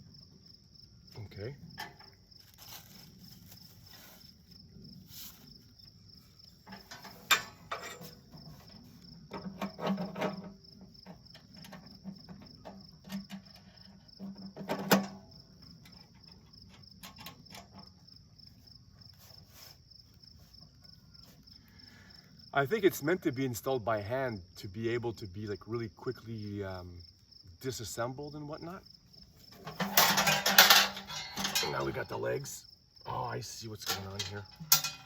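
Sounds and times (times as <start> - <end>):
crickets chirping: 0.0 - 35.0
metal stove parts knocking: 6.6 - 17.9, 29.5 - 32.0, 33.8 - 35.0
rattling: 29.5 - 32.0, 33.8 - 35.0.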